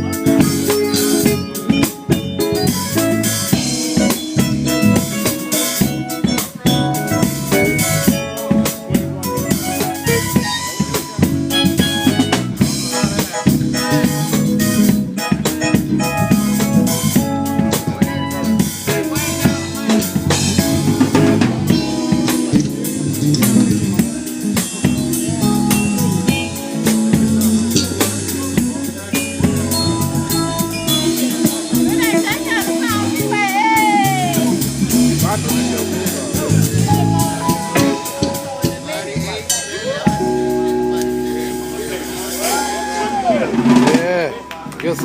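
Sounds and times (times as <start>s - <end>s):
snare and bass drum beating: 0.0s - 39.0s
band playing live: 0.0s - 45.0s
held pitched instrument notes: 0.0s - 45.0s.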